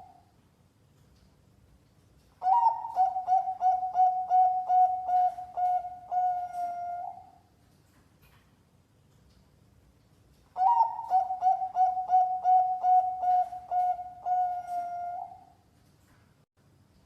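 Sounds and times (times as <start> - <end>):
dove cooing: 2.4 - 7.4, 10.6 - 15.5.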